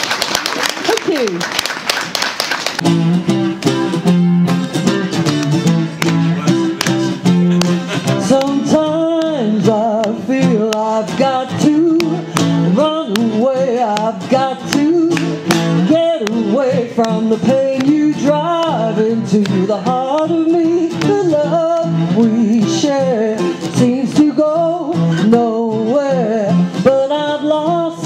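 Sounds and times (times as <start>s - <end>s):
acoustic guitar strumming: 2.8s - 28.0s
person singing: 6.0s - 28.0s.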